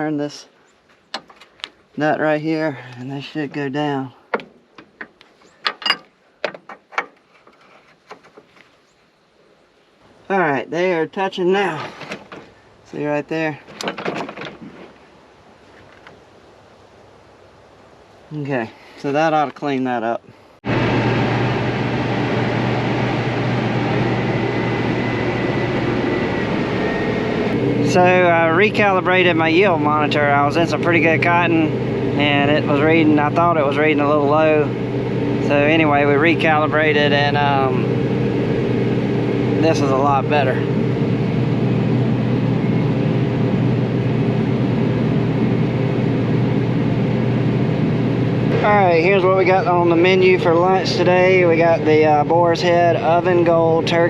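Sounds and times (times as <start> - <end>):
faint high machine whine: 20.0 - 54.0
harvester machine drone: 20.6 - 54.0.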